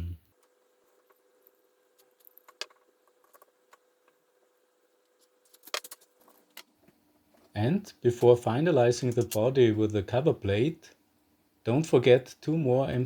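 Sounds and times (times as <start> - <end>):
plastic parts clicking and tapping: 2.0 - 4.2, 5.1 - 7.5.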